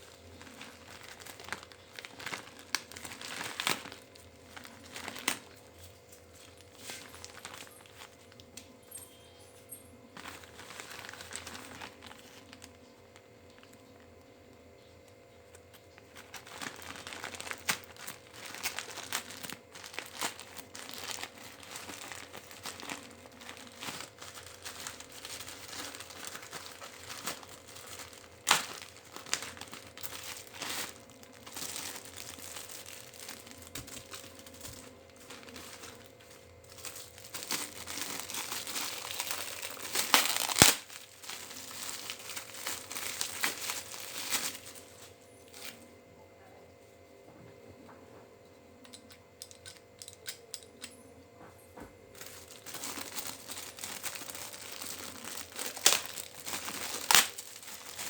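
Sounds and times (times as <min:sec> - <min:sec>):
packaging crinkling and rustling: 0:00.0 - 0:45.9, 0:51.8 - 0:58.0
clicks and sharp cracks: 0:15.0 - 0:36.0, 0:36.7 - 0:44.6, 0:48.8 - 0:51.0, 0:52.2 - 0:58.0.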